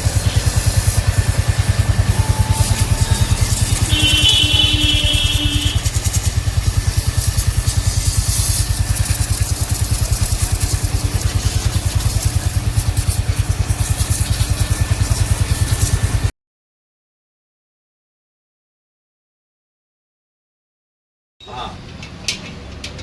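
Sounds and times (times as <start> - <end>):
motorcycle engine idling: 0.0 - 16.3.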